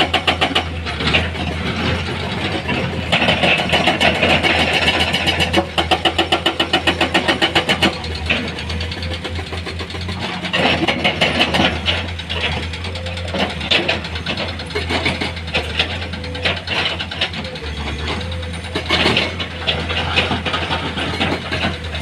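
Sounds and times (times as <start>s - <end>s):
diesel engine humming: 0.0s - 22.0s.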